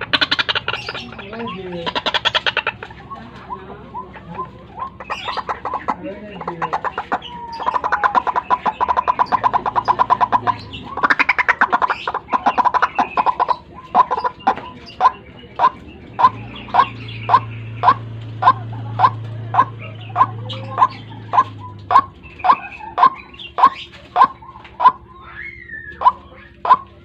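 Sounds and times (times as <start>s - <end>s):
waterhen calling repeated notes: 0.0s - 27.0s.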